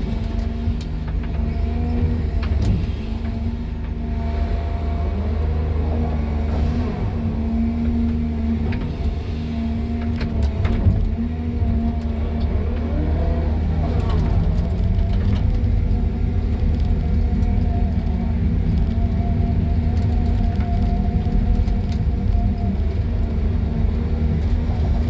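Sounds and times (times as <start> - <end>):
diesel engine running: 0.0 - 25.0.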